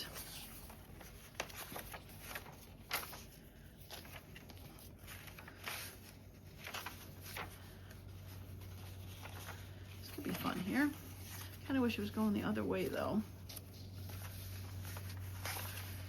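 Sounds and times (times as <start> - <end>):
paper rustling: 0.0 - 16.0.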